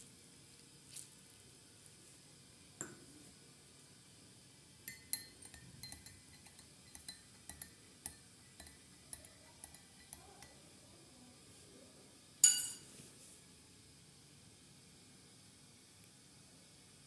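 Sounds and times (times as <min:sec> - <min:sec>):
metal spoon clinking against glass: 0:04.9 - 0:10.6, 0:12.4 - 0:12.9.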